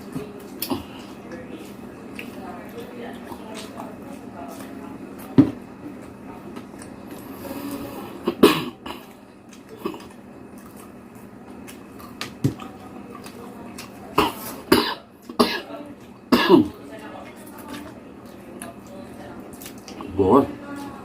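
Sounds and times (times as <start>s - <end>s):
person coughing: 8.2s - 9.1s, 14.2s - 15.7s, 16.3s - 16.7s.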